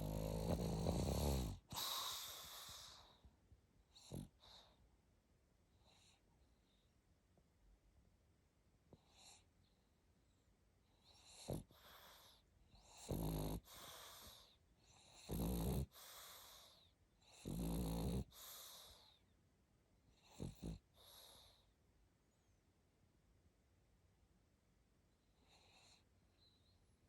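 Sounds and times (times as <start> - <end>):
dog snorting: 0.0 - 3.0, 12.9 - 14.4, 15.2 - 16.6
dog snoring: 0.0 - 3.2, 3.9 - 4.8, 11.0 - 19.2, 20.2 - 21.6, 25.4 - 26.0.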